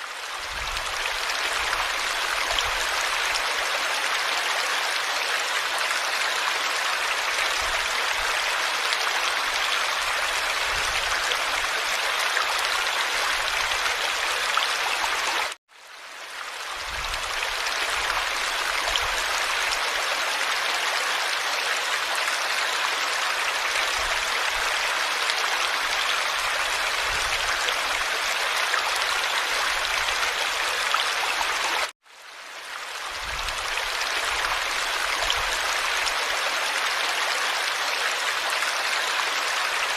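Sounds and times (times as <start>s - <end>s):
rushing water: 0.0s - 39.9s.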